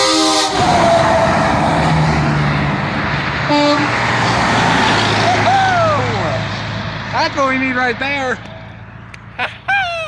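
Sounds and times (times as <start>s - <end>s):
short single-note horn blast: 0.0s - 1.3s
truck air horn chord: 0.0s - 1.7s, 3.4s - 4.2s
heavy trucks passing: 0.0s - 10.0s.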